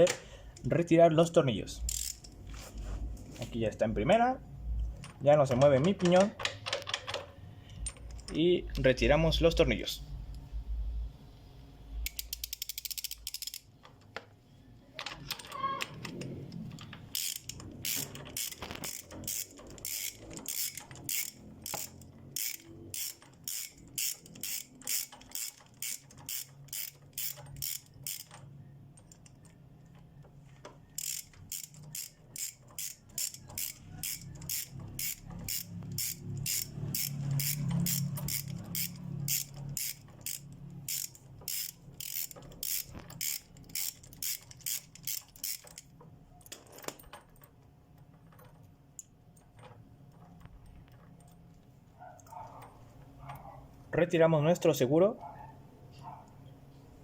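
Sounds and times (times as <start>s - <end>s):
ratchet wrench clicking: 1.7s - 2.4s, 12.0s - 13.7s, 15.2s - 29.6s, 30.8s - 46.0s.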